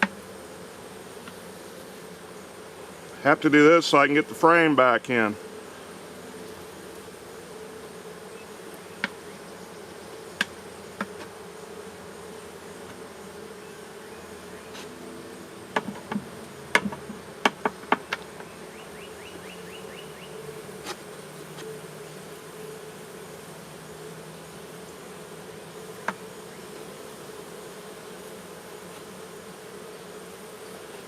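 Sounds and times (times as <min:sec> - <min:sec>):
honeybees buzzing: 0:00.0 - 0:31.0
metal tool tapping wooden frames: 0:15.7 - 0:18.2.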